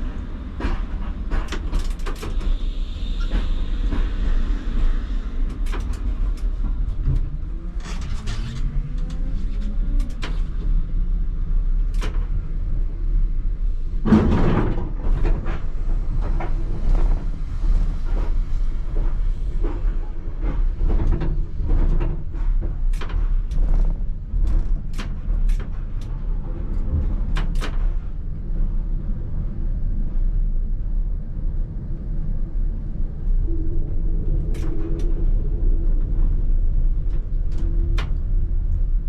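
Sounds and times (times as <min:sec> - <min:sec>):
tram rumbling: 0:00.0 - 0:39.0
tram wheels clacking over track: 0:00.1 - 0:10.7.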